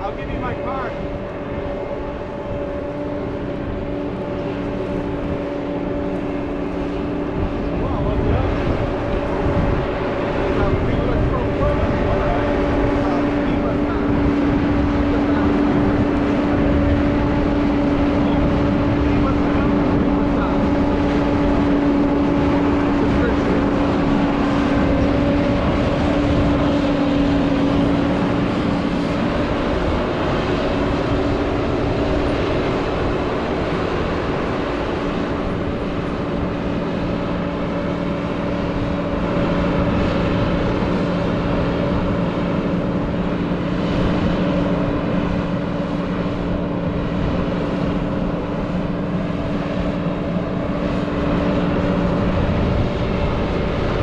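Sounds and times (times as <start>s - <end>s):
combine harvester engine drone: 0.0s - 54.0s.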